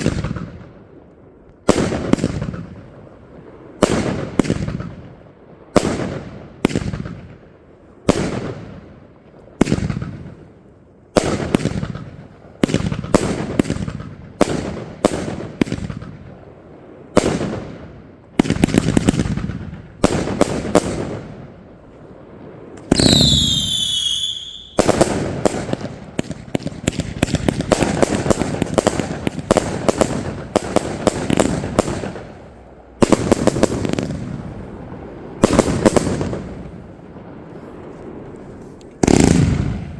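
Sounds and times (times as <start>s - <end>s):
firework bangs echoing: 0.0s - 1.0s, 1.6s - 39.9s
firework falling whistle: 22.8s - 24.9s
rapid crackling firework reports: 22.9s - 39.9s.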